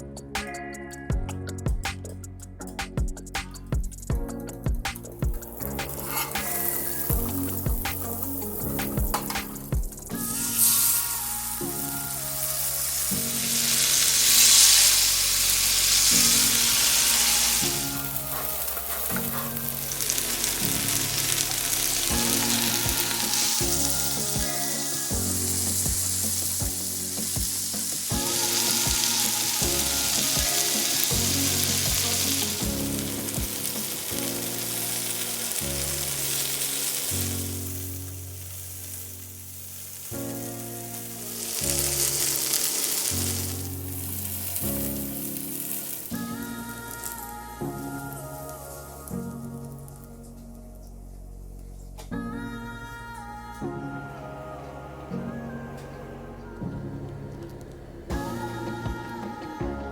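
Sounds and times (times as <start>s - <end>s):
chicken sizzling in a pan: 33.2s - 40.1s.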